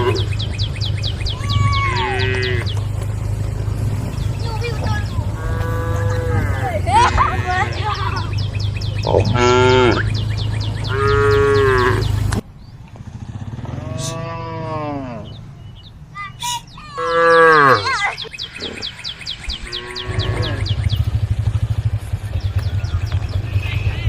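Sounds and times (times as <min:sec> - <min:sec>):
cows mooing: 0:00.0 - 0:00.4, 0:01.4 - 0:03.0, 0:04.8 - 0:08.3, 0:09.0 - 0:12.3, 0:13.6 - 0:15.5, 0:16.9 - 0:21.0.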